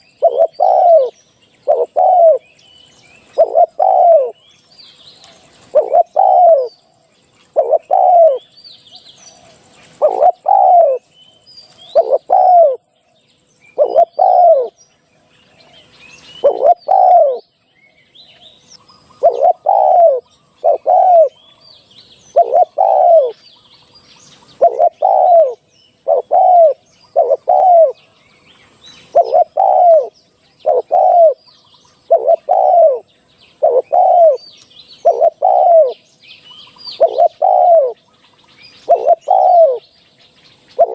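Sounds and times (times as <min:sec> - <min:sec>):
dove cooing: 0:00.0 - 0:02.6, 0:03.2 - 0:04.4, 0:05.6 - 0:06.7, 0:07.5 - 0:08.5, 0:09.4 - 0:11.1, 0:11.8 - 0:12.9, 0:13.7 - 0:14.8, 0:16.3 - 0:17.4, 0:19.1 - 0:21.6, 0:22.3 - 0:23.4, 0:24.4 - 0:28.1, 0:29.0 - 0:31.4, 0:32.0 - 0:36.0, 0:36.8 - 0:38.0, 0:38.8 - 0:39.9
small birds chirping: 0:00.0 - 0:40.9.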